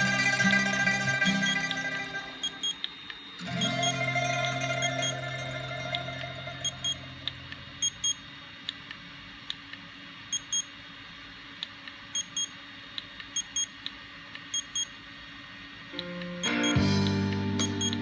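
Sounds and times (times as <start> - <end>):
short high electronic beeps: 0.0 - 2.8, 3.4 - 8.2, 17.6 - 18.0
faint steady hum: 0.0 - 18.0.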